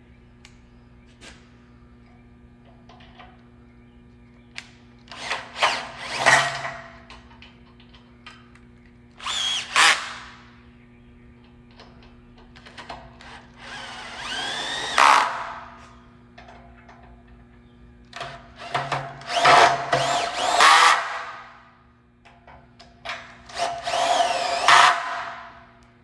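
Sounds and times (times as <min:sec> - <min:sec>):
power drill spinning: 0:05.1 - 0:06.5, 0:09.2 - 0:10.3, 0:13.2 - 0:15.7, 0:18.2 - 0:21.4, 0:23.5 - 0:25.6.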